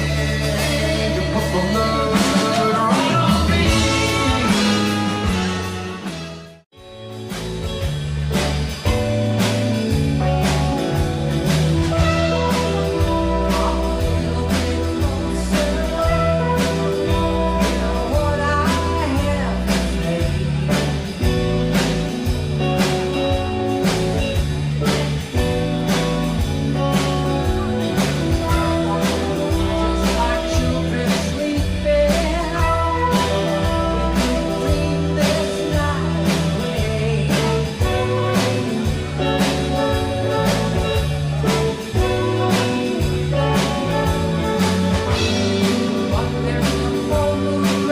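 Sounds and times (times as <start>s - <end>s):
person singing: 0.0s - 5.8s, 11.8s - 24.1s, 24.8s - 47.9s
bass and guitar: 0.0s - 47.9s
steady drum beat: 0.0s - 47.9s.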